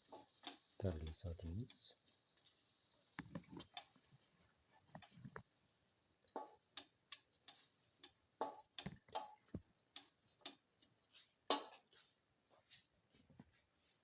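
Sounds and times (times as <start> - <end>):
spatula scraping a pan: 0.0 - 5.2, 10.0 - 14.0.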